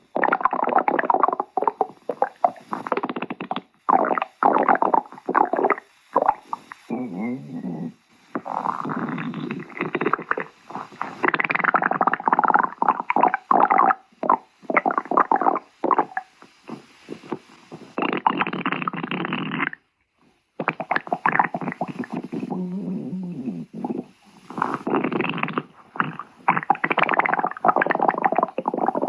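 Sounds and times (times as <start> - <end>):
stomach growling: 0.0 - 19.8, 20.6 - 29.0.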